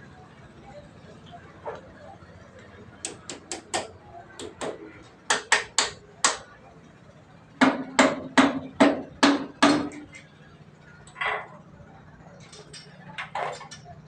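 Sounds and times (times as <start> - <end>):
hammer striking metal: 3.0 - 6.5, 7.6 - 10.0.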